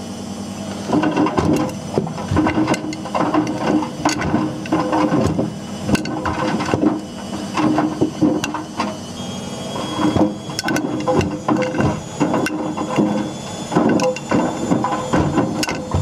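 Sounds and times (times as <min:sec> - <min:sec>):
washing machine motor hum: 0:00.0 - 0:16.0
hard objects clattering in drum: 0:00.9 - 0:08.7, 0:10.0 - 0:16.0.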